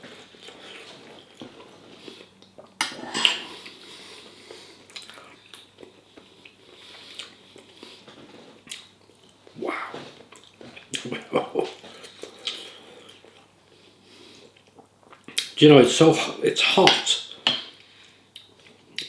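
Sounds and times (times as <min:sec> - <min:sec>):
cutlery clinking on dishes: 0:02.8 - 0:03.6, 0:16.9 - 0:17.8.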